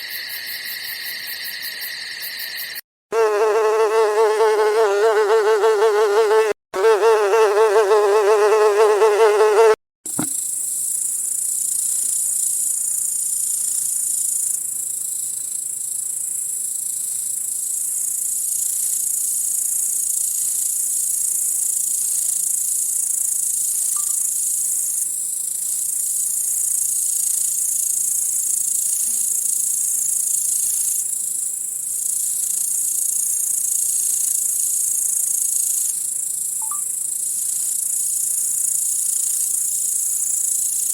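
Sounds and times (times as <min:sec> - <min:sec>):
crickets chirping: 0:00.0 - 0:02.8, 0:34.0 - 0:40.8.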